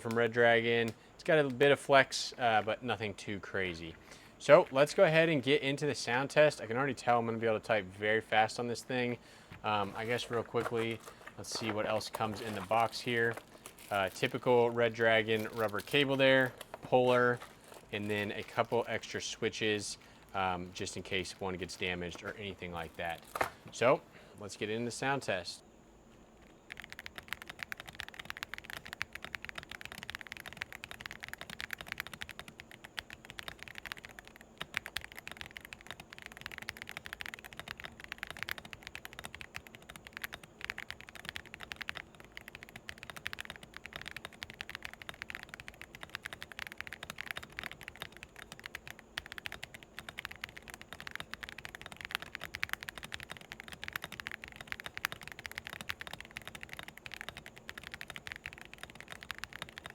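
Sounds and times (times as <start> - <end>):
mechanical keyboard typing: 9.6 - 23.4, 26.6 - 59.9.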